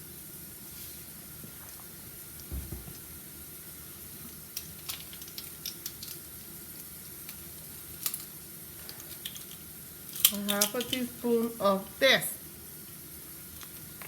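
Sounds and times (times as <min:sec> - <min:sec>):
rice sizzling in a pot: 0:00.0 - 0:14.0
dull thump: 0:02.5 - 0:03.1.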